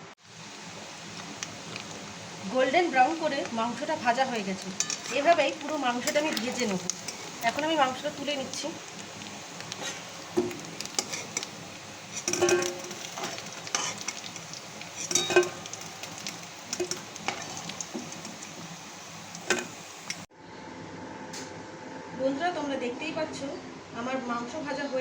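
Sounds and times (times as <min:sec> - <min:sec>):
chicken deep-frying in oil: 0:00.2 - 0:20.3
metal spoon clinking and scraping pan: 0:04.0 - 0:08.7, 0:09.6 - 0:18.6, 0:19.4 - 0:20.2.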